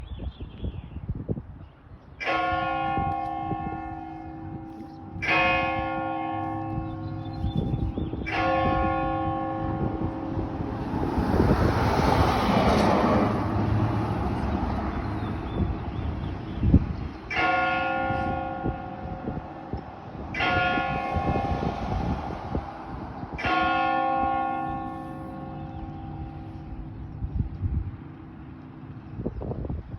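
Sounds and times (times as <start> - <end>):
church bells ringing: 2.2 - 11.0, 17.3 - 27.6.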